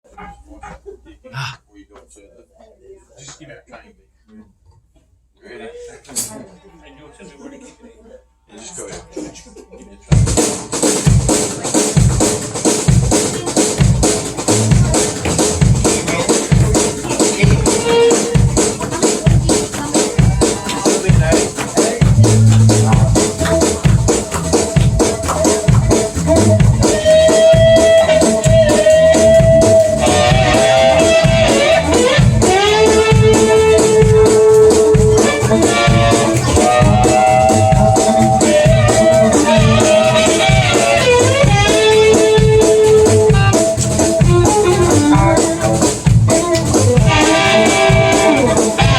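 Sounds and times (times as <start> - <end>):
bass drum beat: 10.1 - 48.9
live country band playing: 10.8 - 48.9
sliding long lead notes: 22.0 - 48.9.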